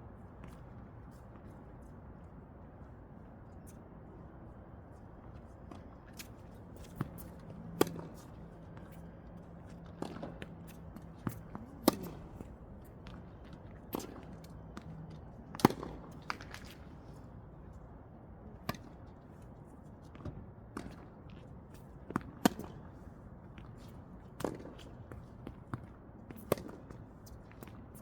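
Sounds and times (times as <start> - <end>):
tennis ball bouncing: 11.1 - 12.4
racket hitting tennis ball: 11.2 - 12.4.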